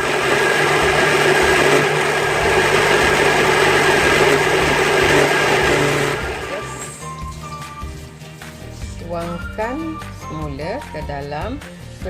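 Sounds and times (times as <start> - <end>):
electric blender whirring: 0.0 - 7.6.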